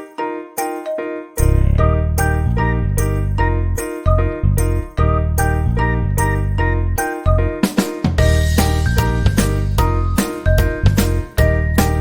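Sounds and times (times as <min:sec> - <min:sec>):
steady bass line: 0:01.4 - 0:06.6.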